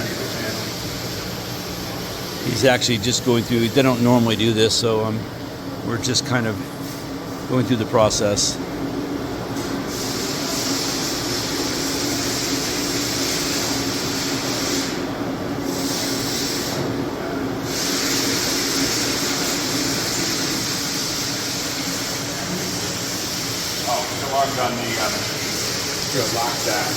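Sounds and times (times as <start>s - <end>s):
continuous hiss: 0.0s - 8.6s, 15.7s - 26.9s
machine hum: 0.0s - 26.9s.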